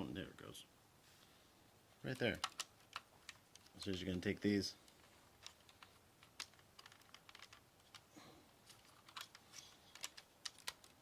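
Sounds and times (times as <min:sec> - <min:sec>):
plastic toy parts clicking: 0:02.2 - 0:04.3, 0:04.9 - 0:11.0.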